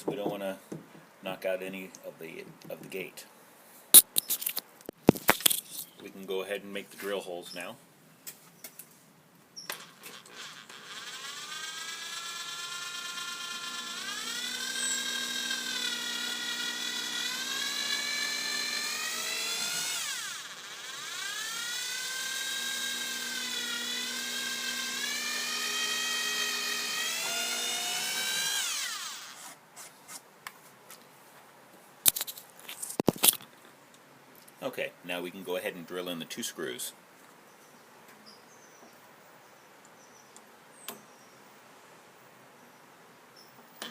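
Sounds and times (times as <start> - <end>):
power drill boring: 9.7 - 29.5.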